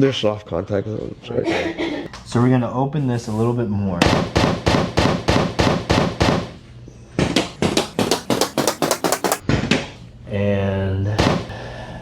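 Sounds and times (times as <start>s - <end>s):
rapid sharp cracks: 7.6s - 9.4s.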